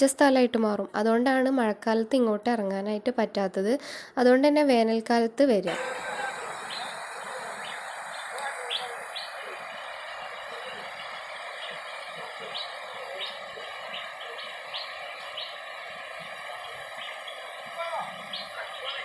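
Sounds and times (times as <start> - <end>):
short high bird chirps: 11.0 - 15.6.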